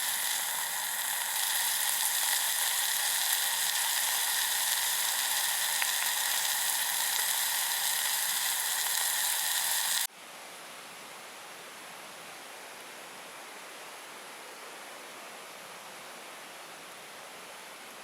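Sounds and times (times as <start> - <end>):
food frying with sizzle: 0.0 - 10.1
quiet even hiss: 0.0 - 18.0.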